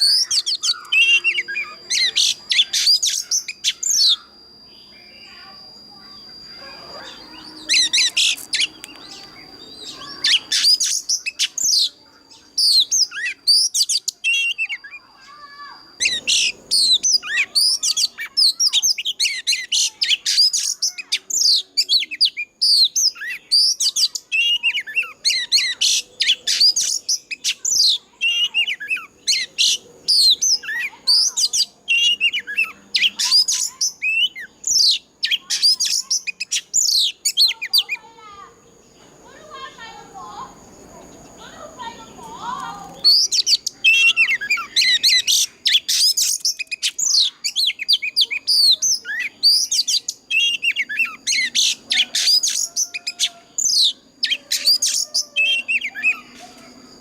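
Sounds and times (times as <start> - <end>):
steady high tone: 0.0 - 10.5
songbird singing whistles: 0.0 - 38.0, 42.6 - 57.0.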